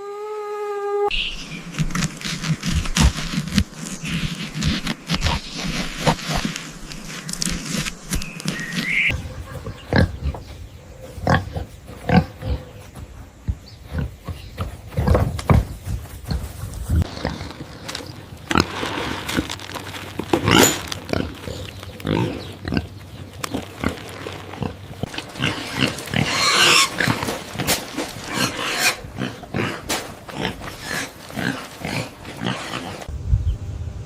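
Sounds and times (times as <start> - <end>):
pig grunting: 9.1 - 12.8, 18.4 - 33.1
pig squealing: 24.6 - 33.1.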